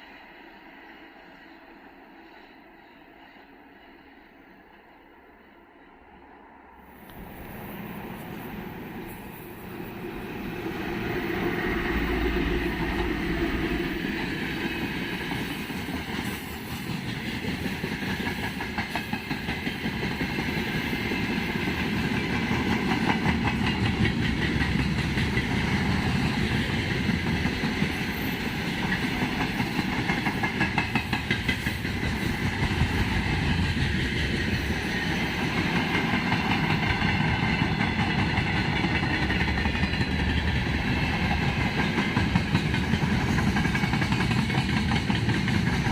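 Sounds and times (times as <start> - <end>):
train rumbling: 0.0 - 45.9
wheels clattering on rails: 12.6 - 45.9.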